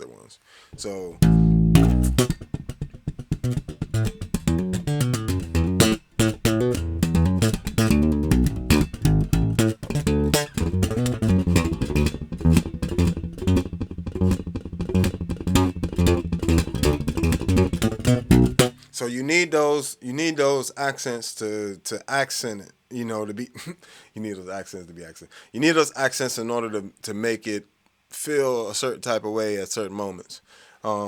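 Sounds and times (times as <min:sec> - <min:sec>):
slapped electric bass guitar: 0:00.8 - 0:18.8.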